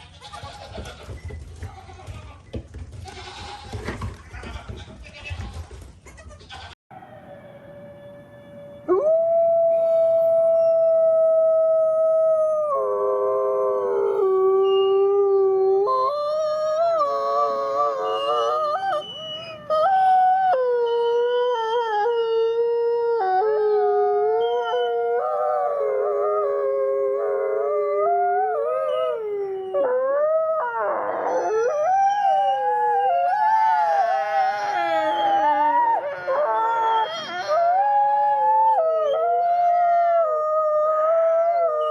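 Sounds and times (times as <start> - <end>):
wolves howling: 8.7 - 41.9.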